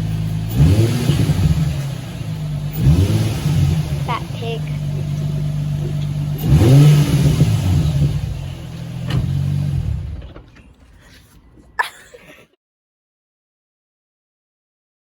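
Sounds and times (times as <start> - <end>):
car engine revving: 0.0 - 10.4.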